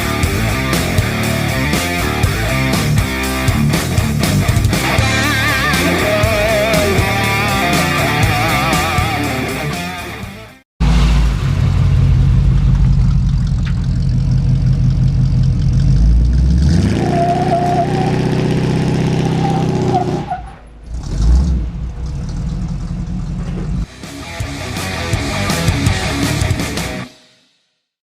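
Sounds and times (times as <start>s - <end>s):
vehicle engine revving: 10.8s - 27.0s.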